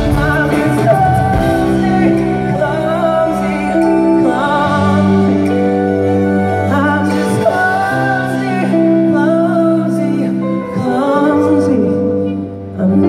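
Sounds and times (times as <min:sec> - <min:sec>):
amplified backing music: 0:00.0 - 0:13.0
man singing with vibrato: 0:00.0 - 0:13.0.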